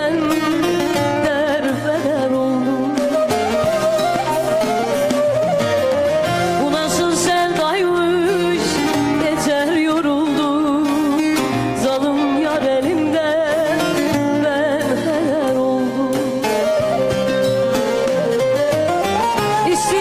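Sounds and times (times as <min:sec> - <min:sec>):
song with ornamented melody: 0:00.3 - 0:09.6.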